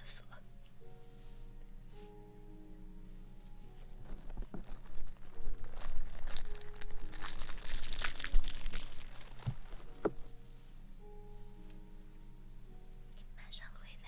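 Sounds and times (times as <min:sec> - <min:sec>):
crinkly material crumpling: 0:03.4 - 0:10.4.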